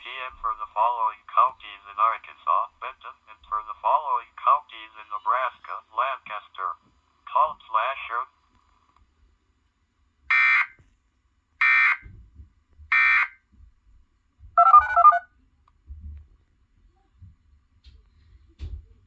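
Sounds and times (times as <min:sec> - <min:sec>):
screechy digital data tones: 0:12.9 - 0:13.3, 0:14.6 - 0:15.2
warbling electronic tones: 0:14.6 - 0:15.2.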